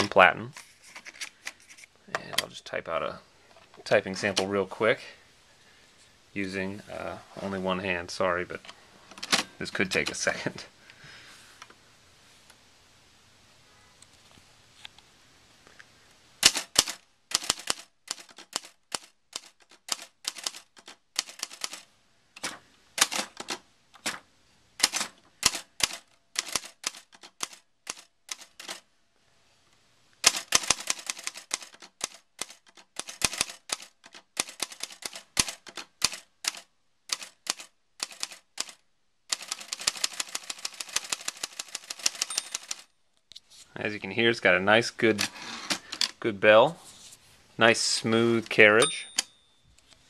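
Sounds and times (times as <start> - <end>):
manual typewriter typing: 16.4 - 24.2, 24.8 - 28.8, 30.2 - 42.9.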